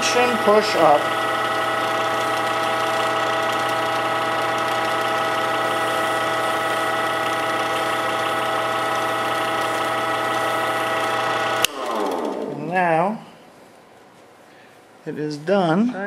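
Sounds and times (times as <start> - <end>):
waxed paper rubbing spinning wood: 0.0 - 12.7
wood lathe humming and whining: 0.0 - 12.8.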